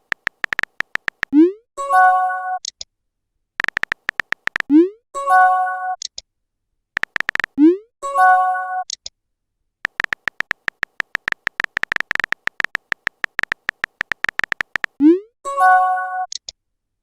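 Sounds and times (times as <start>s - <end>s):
keyboard tap clicks: 0.0s - 1.3s, 3.6s - 4.7s, 7.0s - 7.6s, 9.9s - 15.0s.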